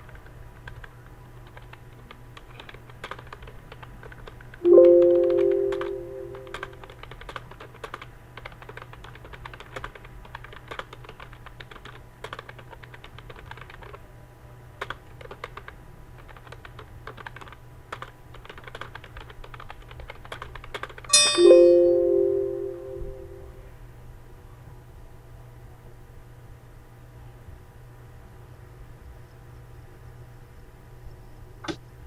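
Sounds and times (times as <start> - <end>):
keyboard typing: 0.0 - 14.0, 14.8 - 23.6
ringing chime: 4.6 - 6.8, 21.1 - 23.6.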